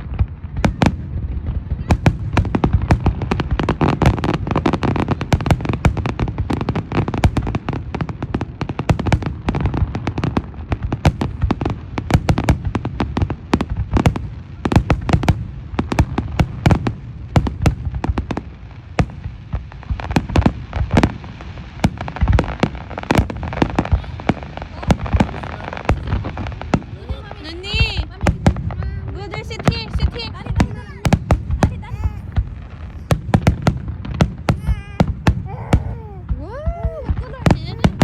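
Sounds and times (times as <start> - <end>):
fireworks bangs and pops: 0.0 - 38.0.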